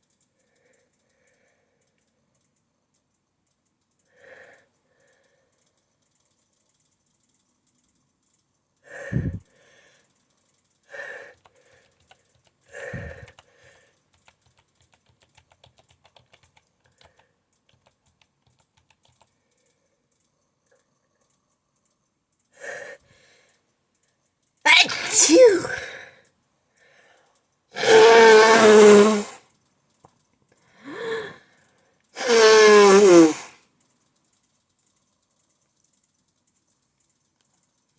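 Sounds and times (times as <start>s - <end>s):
rising breath in: 8.9s - 9.9s, 24.7s - 26.1s, 27.8s - 29.4s, 30.8s - 31.5s, 32.2s - 33.5s
keyboard typing: 11.1s - 19.4s
person sneezing: 24.7s - 26.1s, 27.8s - 29.4s, 32.2s - 33.5s.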